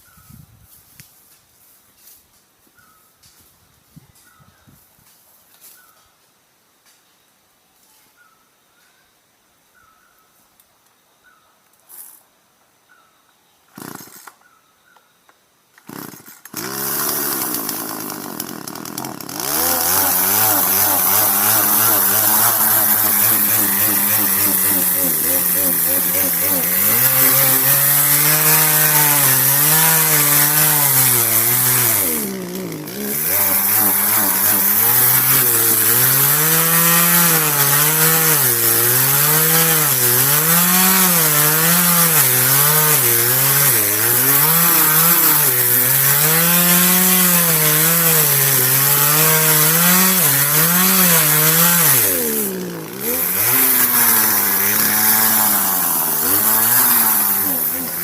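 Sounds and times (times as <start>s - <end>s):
chainsaw cutting wood: 13.8s - 14.4s, 15.8s - 58.0s.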